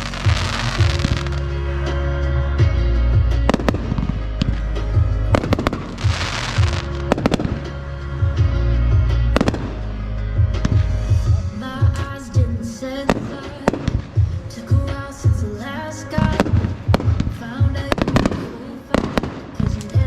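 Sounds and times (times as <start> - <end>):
fireworks bangs: 0.0 - 1.5, 3.5 - 7.8, 13.0 - 15.4, 16.2 - 20.0
music with heavy bass: 0.0 - 20.0
firework hissing rush: 5.3 - 7.8.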